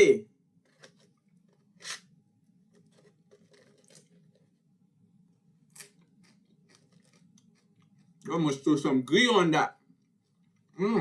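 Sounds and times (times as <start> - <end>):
faint clicks and scrapes: 0.6 - 4.8, 5.7 - 8.3, 9.8 - 10.8.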